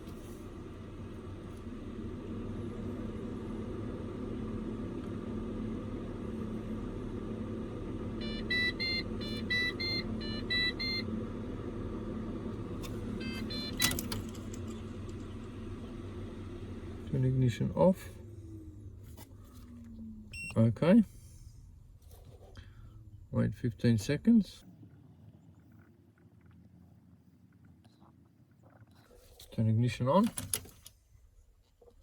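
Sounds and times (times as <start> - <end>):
steady low hum: 0.0 - 30.2
short electronic beeps: 8.2 - 11.0, 13.2 - 14.0.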